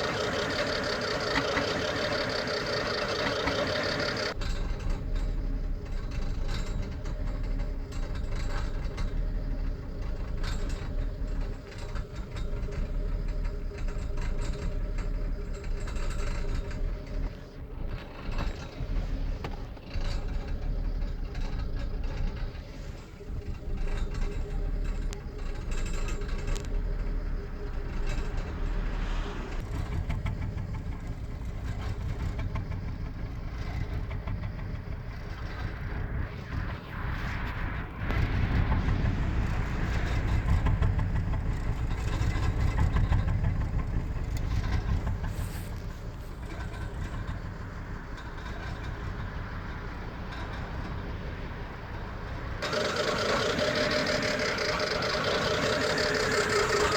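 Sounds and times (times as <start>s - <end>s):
car engine running: 0.0s - 56.9s
engine ticking: 0.0s - 56.9s.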